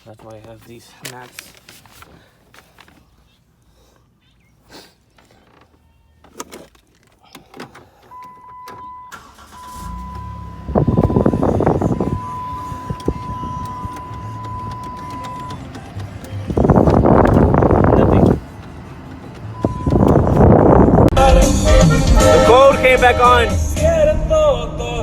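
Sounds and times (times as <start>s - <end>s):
car engine cranking and idling: 5.0s - 21.1s.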